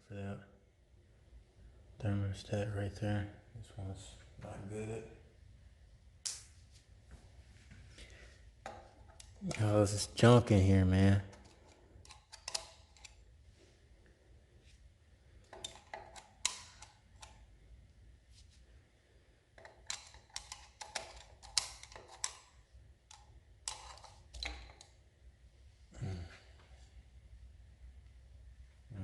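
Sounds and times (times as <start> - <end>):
clicks and taps of tools: 15.5 - 17.4, 19.6 - 25.0.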